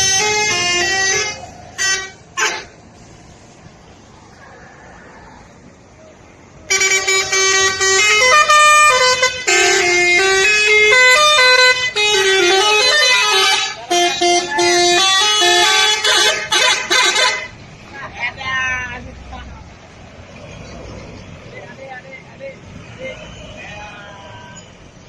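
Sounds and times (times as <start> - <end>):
multi-tone bus horn playing tune: 0.0 - 2.9, 6.7 - 17.6.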